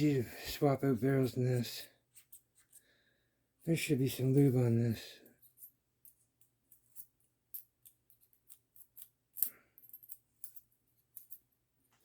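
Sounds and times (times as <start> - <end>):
small metal parts clicking: 6.7 - 11.5.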